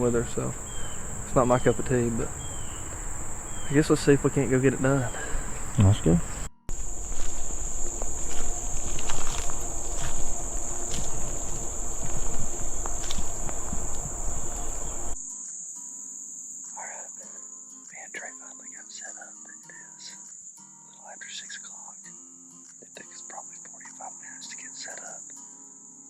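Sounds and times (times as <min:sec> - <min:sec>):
rustling footsteps in vegetation: 0:00.0 - 0:15.2
crickets trilling: 0:00.0 - 0:26.0
low rumble: 0:05.4 - 0:15.2.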